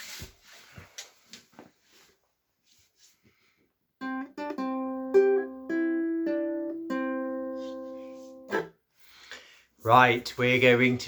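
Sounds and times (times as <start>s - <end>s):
ukulele strumming chords: 4.0s - 8.8s.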